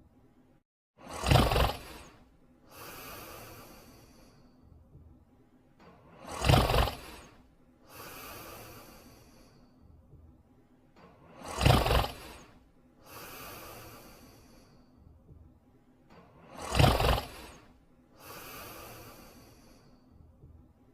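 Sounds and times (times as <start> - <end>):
cartoon dog snoring: 1.0 - 4.3, 6.1 - 9.3, 11.2 - 14.6, 16.4 - 19.8
soft hissing breath out: 1.1 - 4.7, 6.0 - 9.9, 11.1 - 15.0, 16.1 - 20.2.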